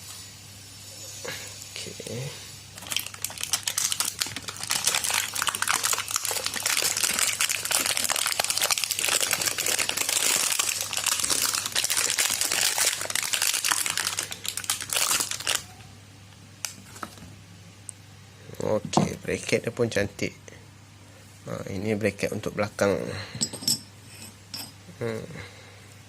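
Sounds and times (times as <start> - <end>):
packaging crinkling: 2.8 - 15.7.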